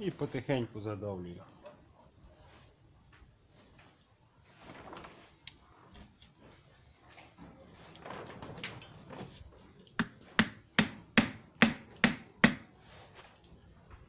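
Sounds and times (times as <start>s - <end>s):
faint handling noise: 1.5s - 10.3s, 12.7s - 14.0s.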